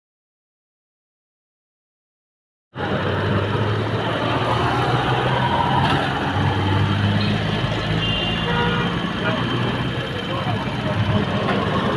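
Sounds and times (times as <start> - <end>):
traffic noise: 2.8 - 11.9
vehicle engine humming: 2.8 - 11.9.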